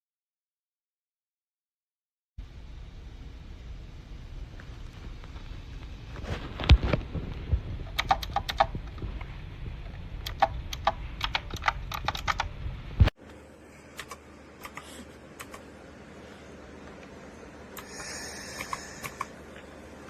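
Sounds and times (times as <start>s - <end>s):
mechanical keyboard keys clicking: 7.9s - 8.8s, 10.2s - 12.5s.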